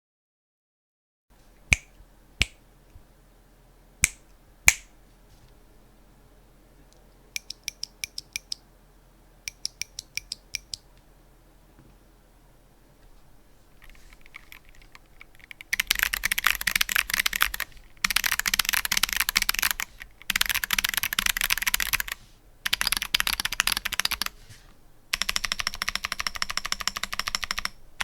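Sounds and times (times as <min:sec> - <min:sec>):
mechanical keyboard clicky keystrokes: 0:13.8 - 0:24.3, 0:25.2 - 0:27.8.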